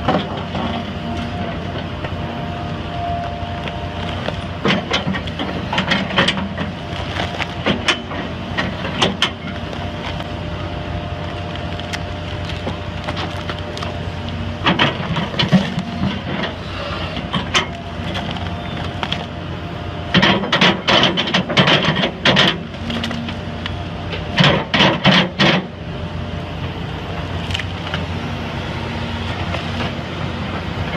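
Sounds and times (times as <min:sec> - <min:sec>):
heavy machine running: 0:00.0 - 0:30.9.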